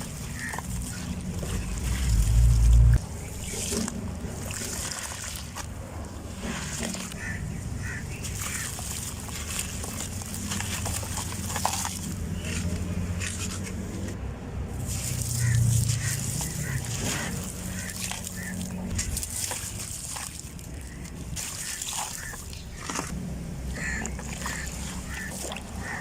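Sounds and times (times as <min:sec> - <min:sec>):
grains trickling: 0:00.0 - 0:13.1, 0:14.8 - 0:26.0
crackling crunches: 0:06.4 - 0:14.2.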